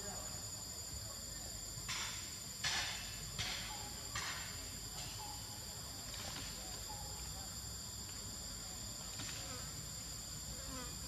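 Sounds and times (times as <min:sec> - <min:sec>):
insects buzzing: 0:00.0 - 0:11.0.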